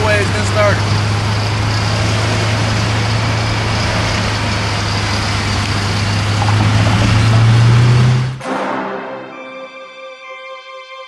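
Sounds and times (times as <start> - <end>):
vehicle engine drone: 0.0 - 8.4
road noise: 0.0 - 8.5.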